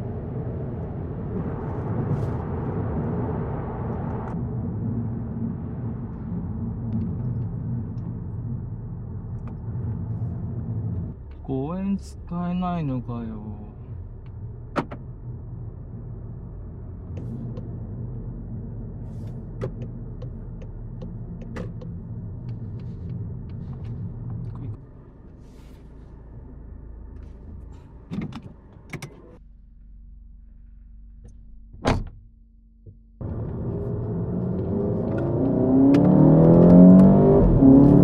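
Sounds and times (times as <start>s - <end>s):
car engine and road rumble: 0.0s - 38.0s.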